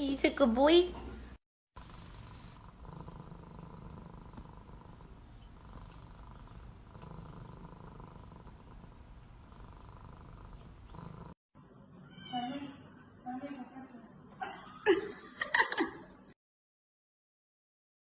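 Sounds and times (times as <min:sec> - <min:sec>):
cat purring: 0:01.8 - 0:11.4.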